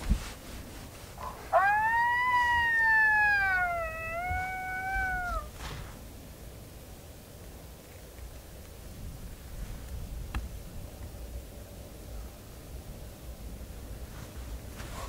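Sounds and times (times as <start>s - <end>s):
electronic coyote howl: 1.5s - 5.5s.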